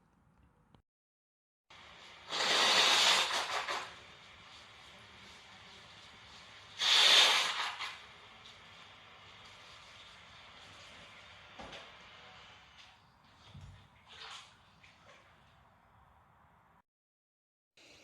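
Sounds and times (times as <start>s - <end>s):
person blowing their nose: 2.2s - 4.0s, 6.8s - 8.0s.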